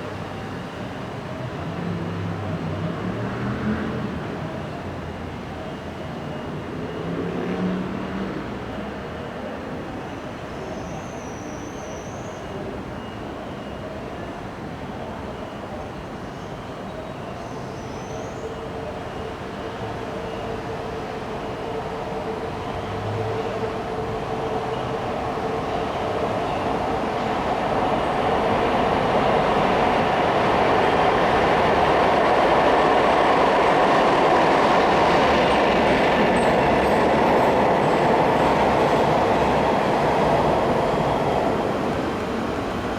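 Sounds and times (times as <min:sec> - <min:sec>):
rail noise: 0:00.0 - 0:42.9
diesel locomotive rumbling: 0:18.4 - 0:42.9.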